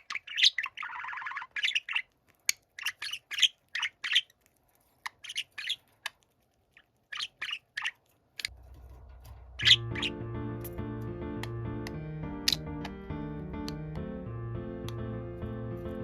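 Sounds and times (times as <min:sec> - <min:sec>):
budgerigar chirping and warbling: 0:00.0 - 0:04.4, 0:05.1 - 0:05.9, 0:06.8 - 0:08.5, 0:09.6 - 0:10.2.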